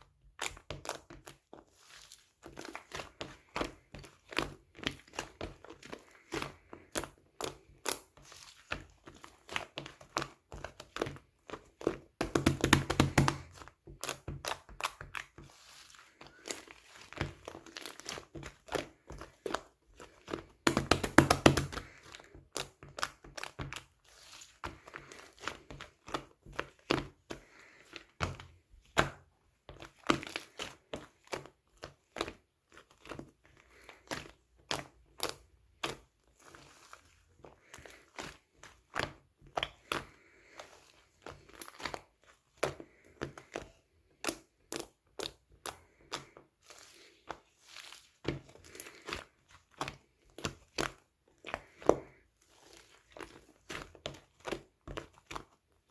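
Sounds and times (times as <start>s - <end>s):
slime clicking and popping: 20.6s - 24.3s.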